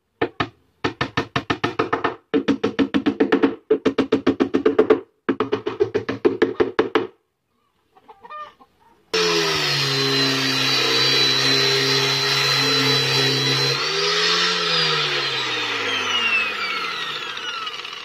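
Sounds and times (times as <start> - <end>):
power tool motor whining: 9.2 - 18.0.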